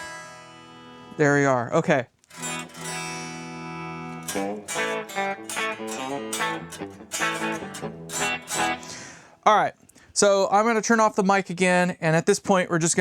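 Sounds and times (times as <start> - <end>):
electric guitar chords and notes: 2.3 - 9.4.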